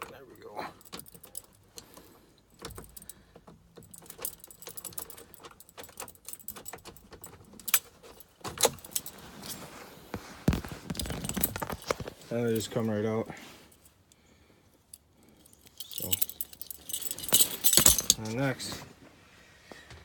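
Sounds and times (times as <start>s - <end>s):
keys jangling on a key ring: 0.6s - 1.8s, 2.6s - 9.6s, 14.9s - 18.4s.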